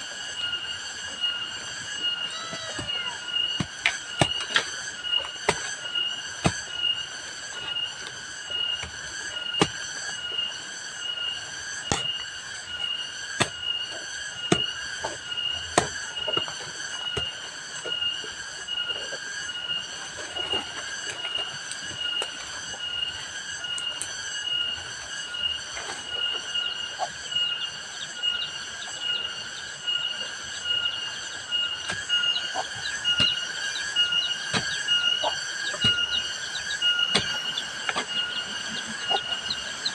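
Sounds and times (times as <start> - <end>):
insects buzzing: 0.0 - 39.9.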